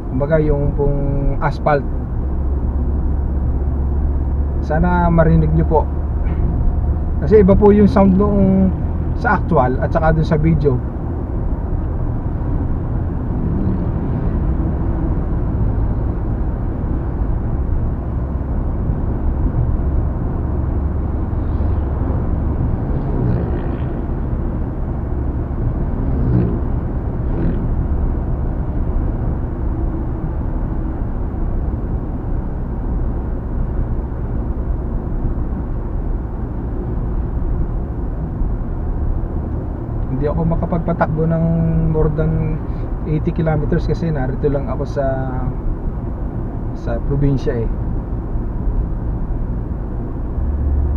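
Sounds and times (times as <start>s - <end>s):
car engine hum: 0.0s - 50.9s
road and tyre rumble: 0.0s - 50.9s.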